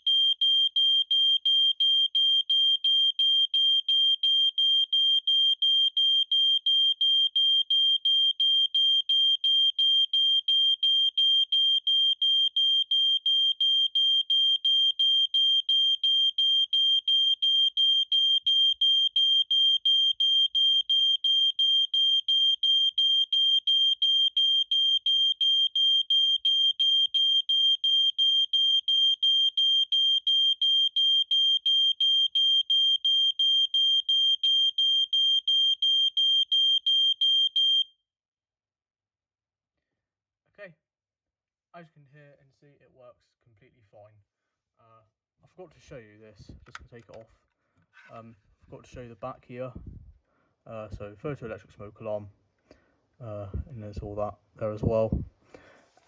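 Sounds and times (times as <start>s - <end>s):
smoke alarm pulsing tone: 0.0s - 37.9s.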